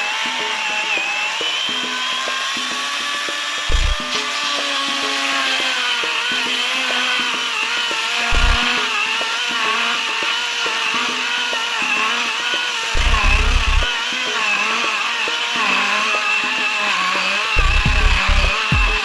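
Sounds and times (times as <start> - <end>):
electric chainsaw cutting wood: 0.0 - 19.0
heavy low thumps: 3.7 - 4.0, 8.3 - 8.7, 13.0 - 13.9, 17.6 - 19.0.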